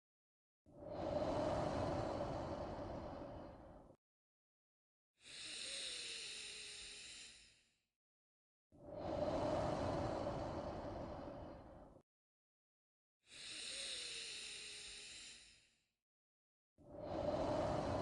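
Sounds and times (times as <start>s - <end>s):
person breathing deeply: 0.8s - 4.0s, 5.2s - 7.4s, 8.8s - 12.0s, 13.3s - 15.6s, 16.9s - 18.0s.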